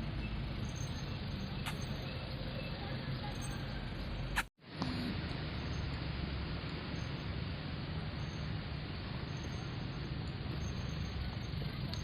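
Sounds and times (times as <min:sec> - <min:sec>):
van engine and road noise: 0:00.0 - 0:12.0.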